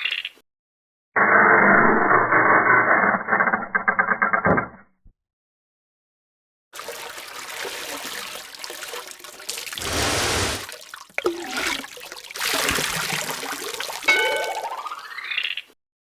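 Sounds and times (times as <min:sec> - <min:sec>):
water trickling and pouring: 0:06.8 - 0:15.1.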